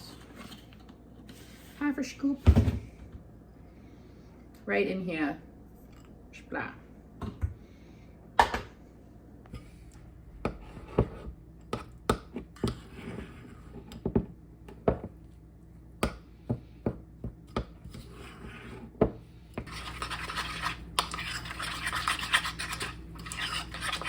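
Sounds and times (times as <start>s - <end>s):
spoon knocking and scraping bowl: 10.4s - 15.2s, 17.3s - 24.0s.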